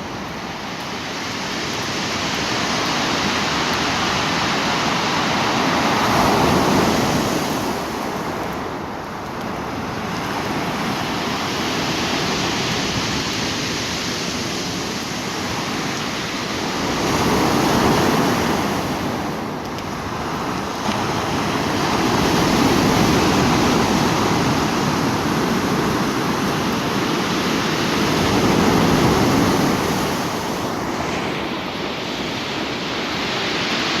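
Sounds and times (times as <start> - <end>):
sea surf washing ashore: 0.0 - 34.0.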